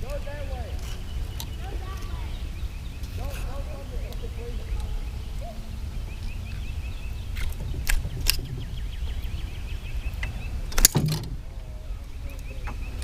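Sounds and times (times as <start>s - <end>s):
low rumble: 3.7s - 12.4s
sharp clicks: 7.3s - 11.4s.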